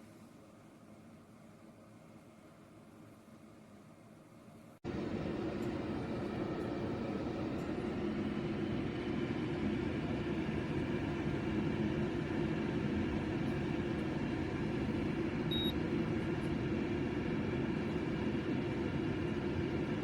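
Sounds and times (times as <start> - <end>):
humidifier fan whirring: 0.0 - 20.0
short high beep: 15.5 - 15.8.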